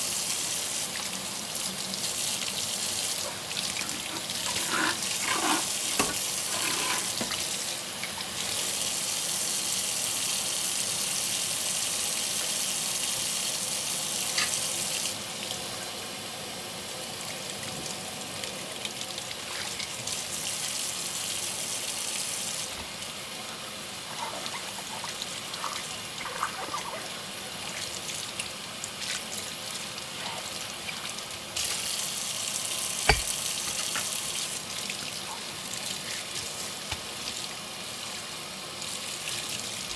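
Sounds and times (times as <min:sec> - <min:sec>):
tap running into a sink: 0:03.7 - 0:08.2, 0:33.0 - 0:34.4, 0:36.0 - 0:37.5.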